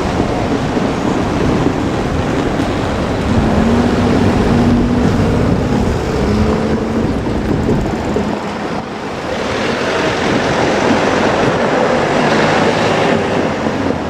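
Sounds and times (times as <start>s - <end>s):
train rumbling past: 0.0s - 14.0s
humming tone: 2.6s - 8.8s.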